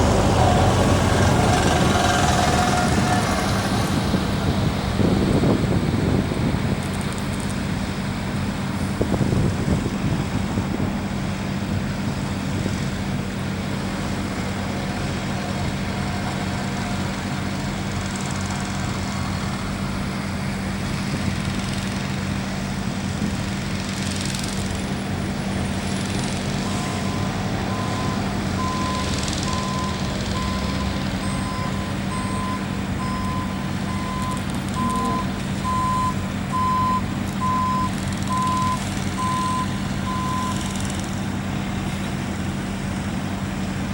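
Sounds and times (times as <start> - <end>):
diesel truck engine running: 0.0 - 43.9
reversing beeper: 26.6 - 40.7.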